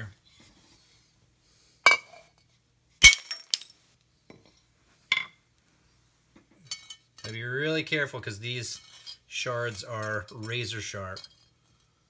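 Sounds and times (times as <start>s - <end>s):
china cracking: 3.0s - 3.7s
shards clinking: 3.0s - 3.8s, 6.7s - 7.0s.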